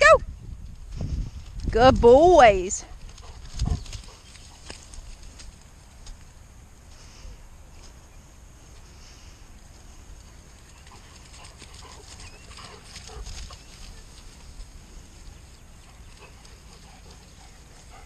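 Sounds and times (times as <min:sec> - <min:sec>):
dogs vocalizing: 0:10.7 - 0:14.2, 0:15.7 - 0:18.0.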